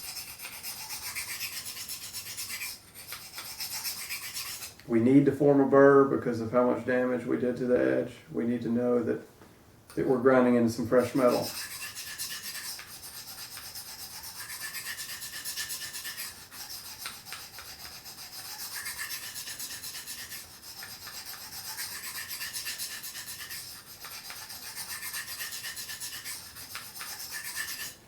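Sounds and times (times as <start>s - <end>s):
knife scraping on sharpening plate: 0.0s - 4.7s, 11.0s - 28.0s.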